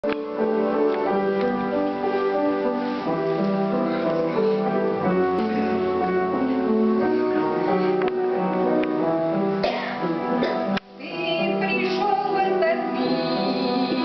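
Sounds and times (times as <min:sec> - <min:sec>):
slow piano music: 0:00.0 - 0:14.0.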